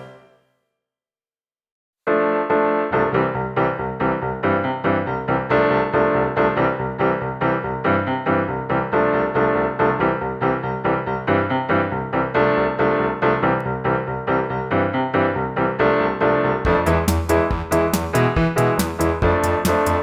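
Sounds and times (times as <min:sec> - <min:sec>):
keyboard melody: 0:00.0 - 0:00.5, 0:16.5 - 0:20.0
drums: 0:16.7 - 0:20.0.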